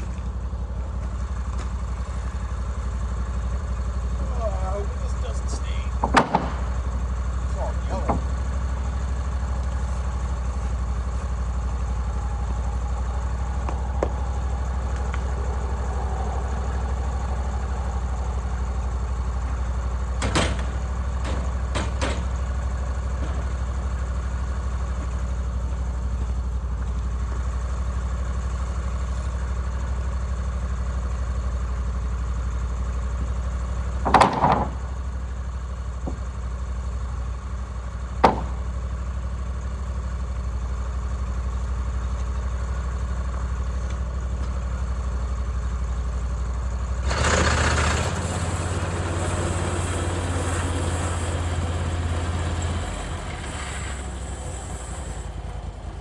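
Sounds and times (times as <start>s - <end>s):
gasoline engine idling: 0.0s - 56.0s
sharp metallic knocks: 5.4s - 6.9s, 7.8s - 8.5s, 20.2s - 22.4s, 34.0s - 35.0s, 38.2s - 38.8s.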